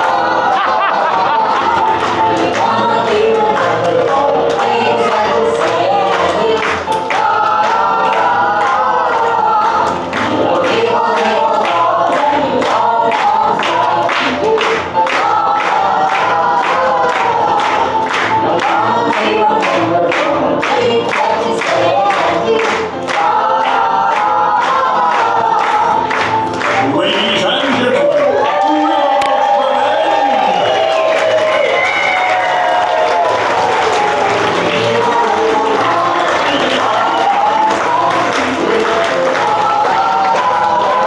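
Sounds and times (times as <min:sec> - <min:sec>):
group of voices singing: 0:00.0 - 0:41.0.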